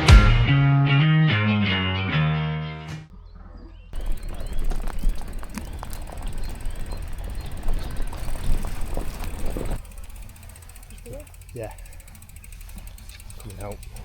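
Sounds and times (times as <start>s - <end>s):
bike clicking and rattling: 4.0s - 14.0s.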